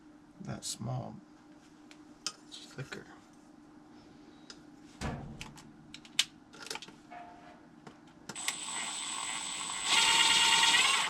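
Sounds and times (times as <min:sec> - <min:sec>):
power tool whining: 0:08.4 - 0:11.0.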